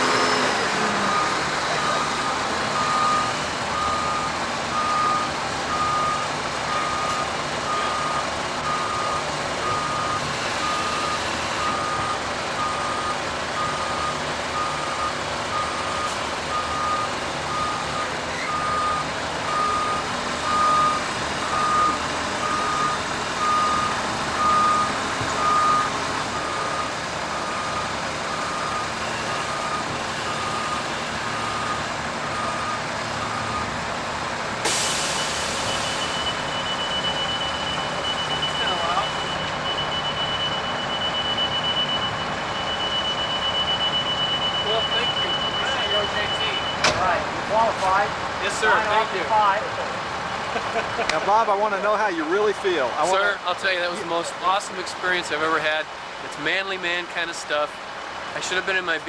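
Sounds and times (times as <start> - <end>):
backup alarm beeping: 1.1 - 33.7, 34.8 - 47.1.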